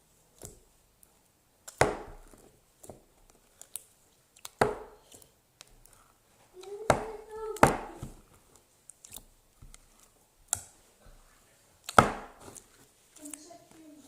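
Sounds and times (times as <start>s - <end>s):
slime popping and clicking: 1.6s - 2.1s, 2.8s - 5.8s.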